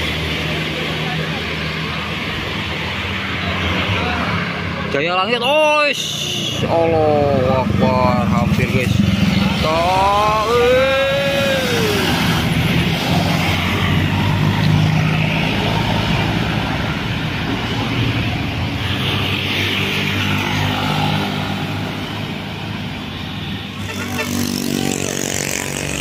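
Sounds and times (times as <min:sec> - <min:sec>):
heavy vehicle engines droning: 0:00.0 - 0:26.0.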